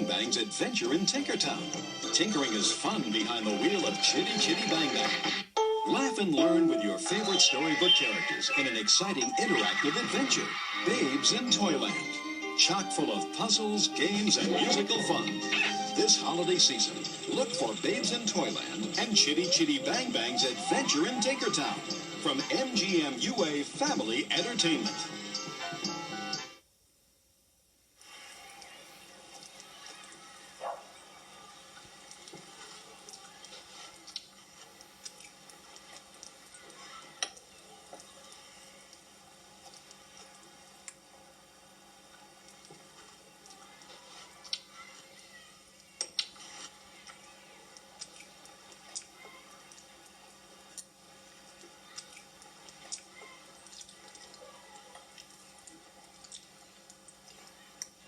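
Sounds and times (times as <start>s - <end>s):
steady hiss: 0.0s - 54.0s
small clicks and crackles: 31.8s - 41.0s, 42.1s - 58.0s.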